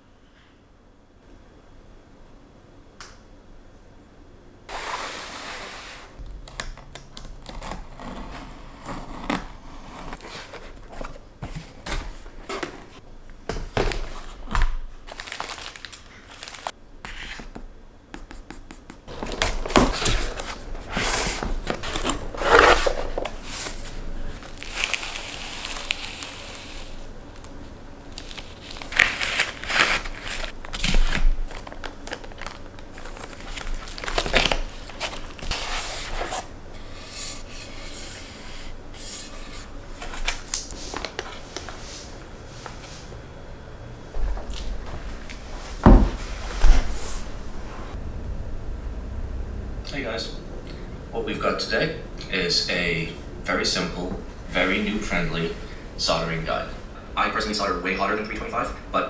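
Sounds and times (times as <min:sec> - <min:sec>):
material crinkling and tearing: 0:13.9 - 0:17.4, 0:19.1 - 0:37.5, 0:39.2 - 0:41.7.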